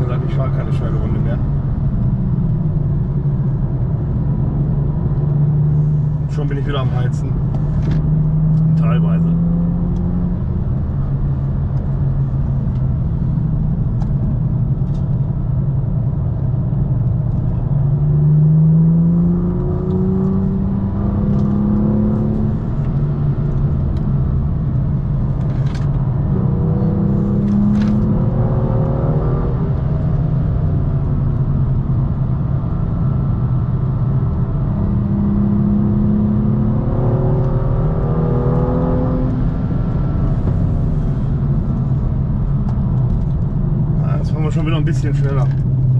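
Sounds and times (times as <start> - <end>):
car engine revving hard: 35.0 - 41.3.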